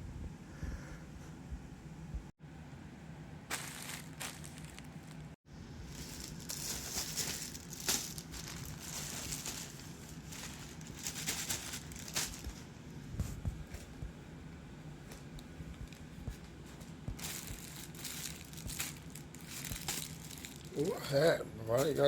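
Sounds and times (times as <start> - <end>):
packaging crinkling and rustling: 3.5 - 12.6, 15.1 - 20.9.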